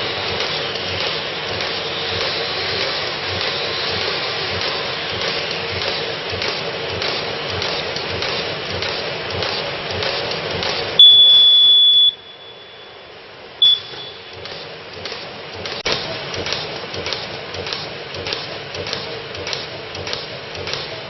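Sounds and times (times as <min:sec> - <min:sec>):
high electronic beep: 0:11.0 - 0:13.0, 0:13.6 - 0:14.3.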